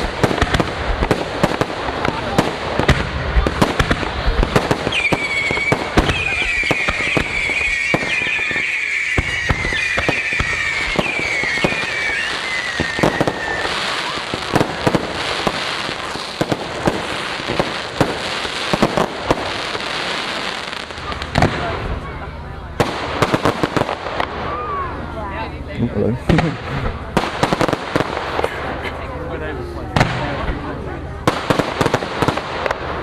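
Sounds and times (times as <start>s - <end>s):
firework bangs and pops: 0.0s - 22.0s, 22.8s - 24.6s, 26.3s - 28.7s, 29.9s - 33.0s
firework crackling: 0.0s - 25.1s, 26.2s - 29.0s, 29.8s - 33.0s
firework whistle falling: 4.8s - 14.4s.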